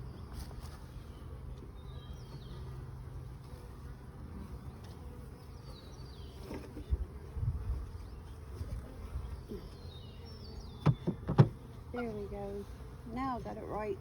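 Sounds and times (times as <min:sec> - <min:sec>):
honeybees buzzing: 0:00.0 - 0:14.0
dull bumps from handling: 0:10.8 - 0:11.6.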